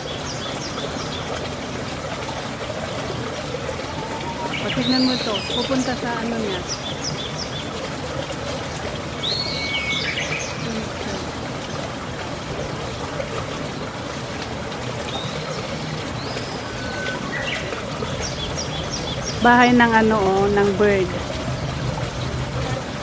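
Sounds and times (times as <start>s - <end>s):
flowing water rushing: 0.0s - 23.0s
birds chirping and whistling: 3.7s - 7.4s, 16.2s - 20.9s.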